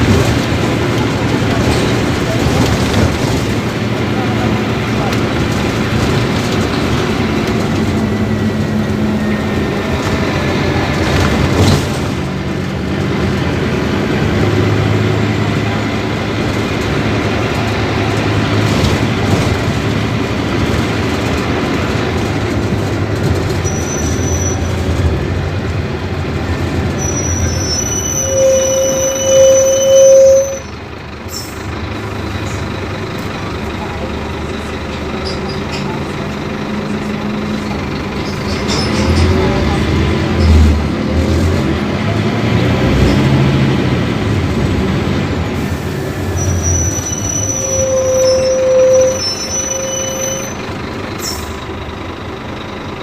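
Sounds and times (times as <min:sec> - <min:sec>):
bus body rattling: 0:00.0 - 0:53.0
diesel bus engine droning: 0:00.0 - 0:53.0
short high squeal: 0:23.6 - 0:24.8, 0:27.0 - 0:30.7, 0:46.3 - 0:50.6.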